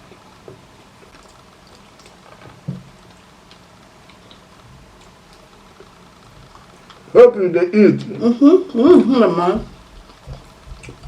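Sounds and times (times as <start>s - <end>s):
wet chewing: 0.0s - 7.1s, 9.9s - 11.0s.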